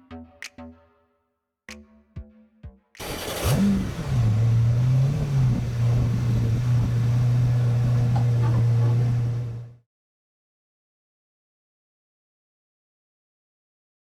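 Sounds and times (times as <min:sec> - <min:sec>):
car engine drone: 0:03.0 - 0:09.8.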